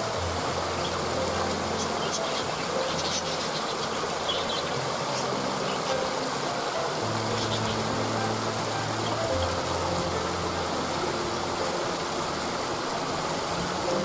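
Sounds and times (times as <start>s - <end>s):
waterfall rushing: 0.0s - 14.0s
faint bird chirps: 0.8s - 6.2s.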